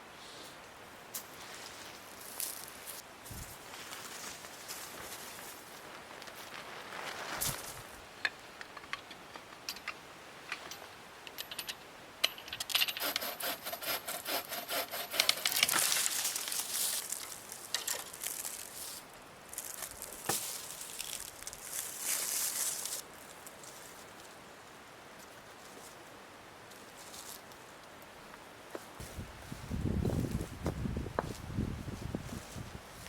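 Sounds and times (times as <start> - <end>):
saw scraping strokes: 12.9 - 15.9.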